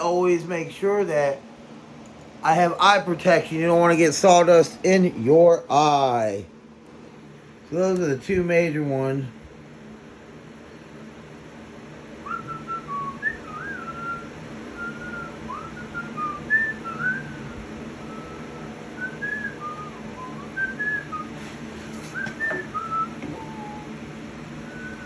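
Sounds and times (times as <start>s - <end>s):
steady low hum: 0.0s - 25.0s
person whistling a tune: 12.2s - 21.4s, 22.0s - 24.0s, 24.6s - 25.0s.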